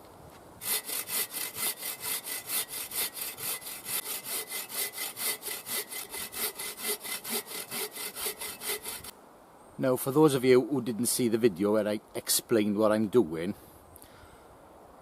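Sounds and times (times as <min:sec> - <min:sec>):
bow saw cutting log: 0:00.6 - 0:09.1.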